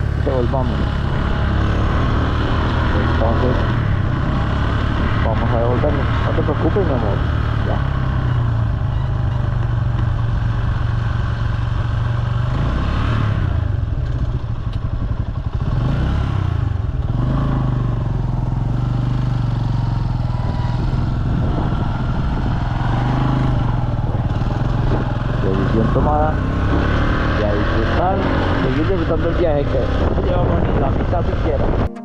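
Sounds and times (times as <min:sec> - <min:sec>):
motorcycle engine running: 0:00.0 - 0:32.0
wind noise: 0:20.2 - 0:25.6, 0:29.6 - 0:32.0.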